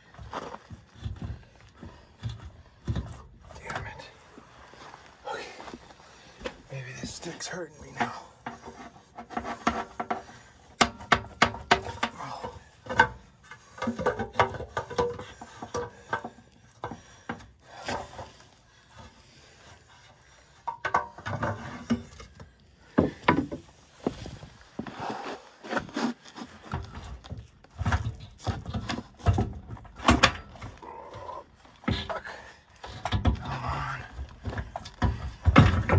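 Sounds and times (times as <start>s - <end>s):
metal chain clanking and scraping: 6.0s - 24.7s, 25.6s - 35.9s.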